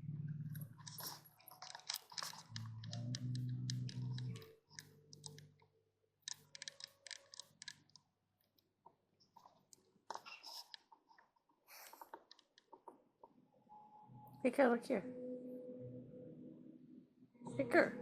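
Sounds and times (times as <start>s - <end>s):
pet chewing and gnawing: 0.8s - 5.4s.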